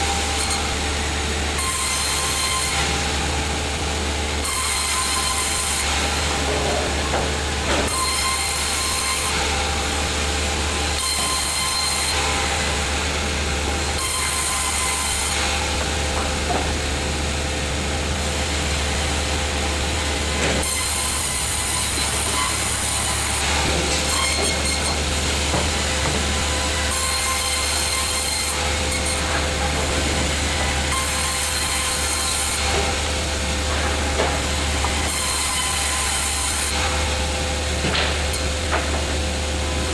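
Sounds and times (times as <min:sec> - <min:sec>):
sawmill saw cutting timber: 0:00.0 - 0:39.9.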